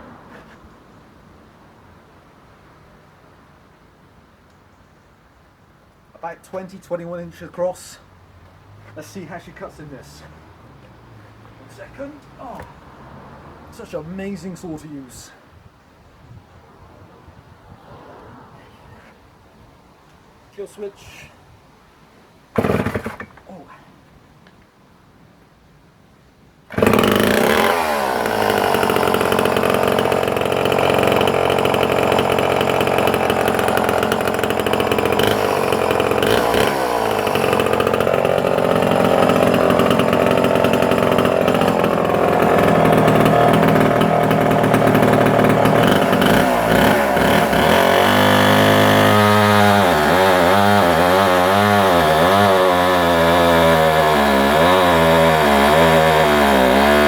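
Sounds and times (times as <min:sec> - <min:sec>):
chainsaw cutting through log: 0:22.6 - 0:23.4, 0:26.7 - 0:57.0.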